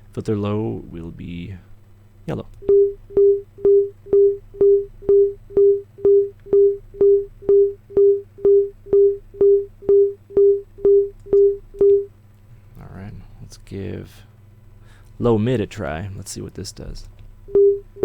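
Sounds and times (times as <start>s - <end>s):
short sine-wave beeps: 2.6s - 12.1s, 17.5s - 18.0s
click at beep onset: 4.2s - 12.1s.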